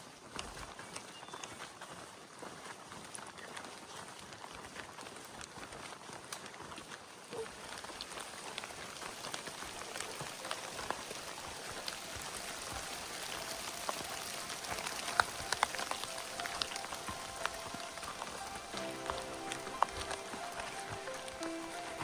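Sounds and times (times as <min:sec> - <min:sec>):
raindrops ticking close by: 0:00.0 - 0:22.0
rain falling: 0:07.3 - 0:22.0.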